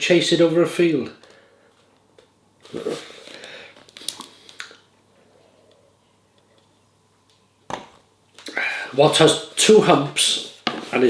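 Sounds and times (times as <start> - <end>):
burst of breath: 2.8 - 3.8.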